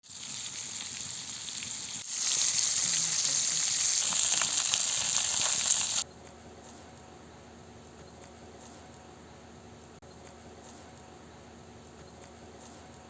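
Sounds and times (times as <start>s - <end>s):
fish sizzling in hot oil: 0.0s - 6.0s.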